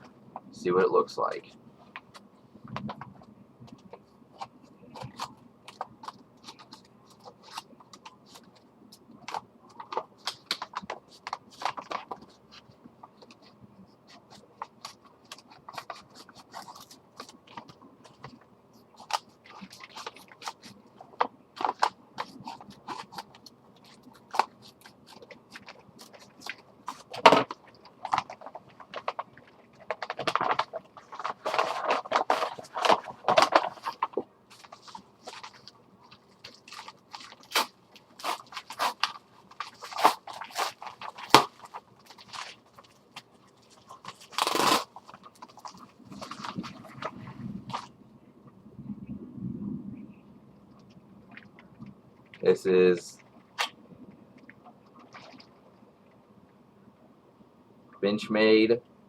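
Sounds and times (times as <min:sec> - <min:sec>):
packaging rustling and crinkling: 0:01.8 - 0:47.9.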